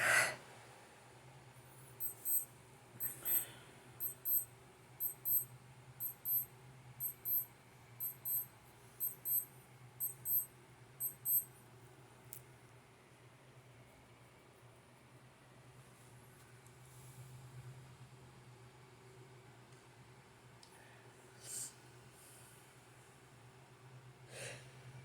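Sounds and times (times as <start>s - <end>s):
high-pitched electronic double beep: 2.0s - 11.5s.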